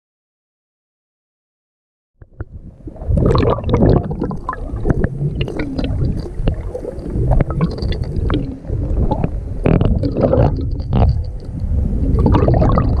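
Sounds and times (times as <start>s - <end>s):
water sloshing and gurgling: 2.2s - 13.0s
small water splashes: 2.9s - 13.0s.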